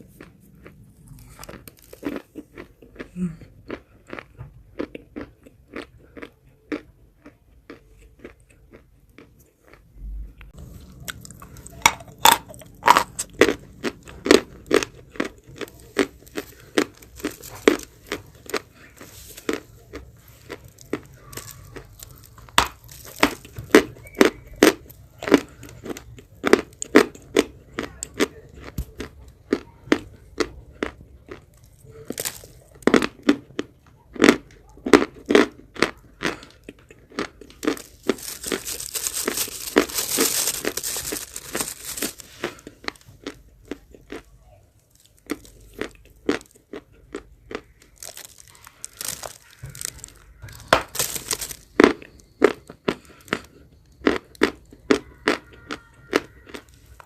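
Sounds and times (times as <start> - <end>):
biting and crunching chalk: 0.0 - 9.9, 10.6 - 44.3, 45.0 - 57.0
dense crackling: 29.6 - 43.8, 45.0 - 53.3.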